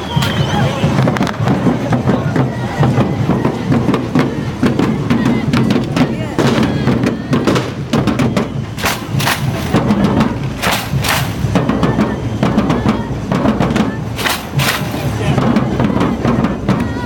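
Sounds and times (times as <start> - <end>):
drum band playing: 0.0 - 17.0
sharp cracks: 8.8 - 9.8, 10.6 - 11.4, 14.2 - 15.1.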